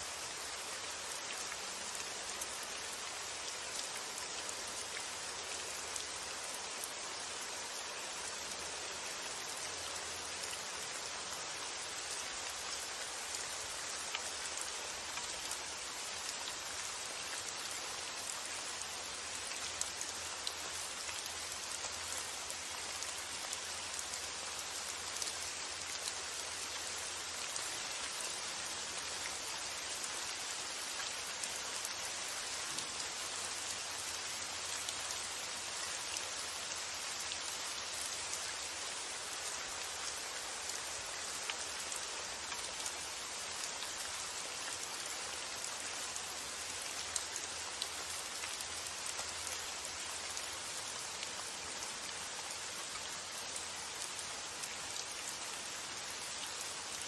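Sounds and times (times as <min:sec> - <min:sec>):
wind: 0:00.0 - 0:57.0.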